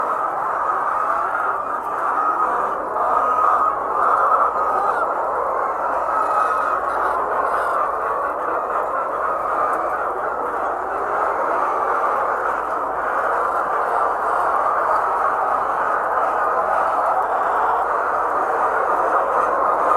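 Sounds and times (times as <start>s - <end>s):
hens clucking and squawking: 0.0s - 19.9s.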